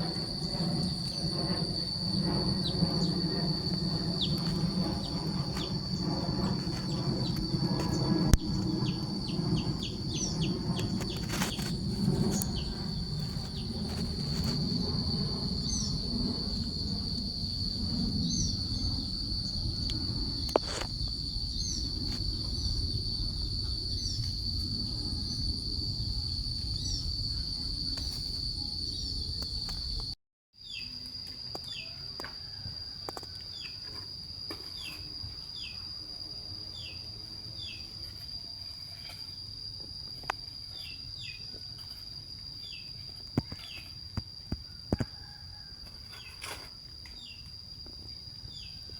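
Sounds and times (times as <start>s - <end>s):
low outdoor rumble: 0.0s - 30.2s
insect high trill: 0.0s - 48.9s.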